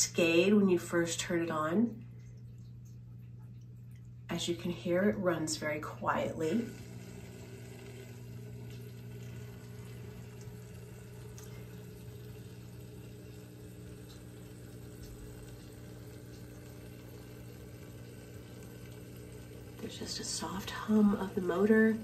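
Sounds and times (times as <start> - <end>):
fountain pump humming: 0.0 - 22.0
water trickling: 0.0 - 22.0.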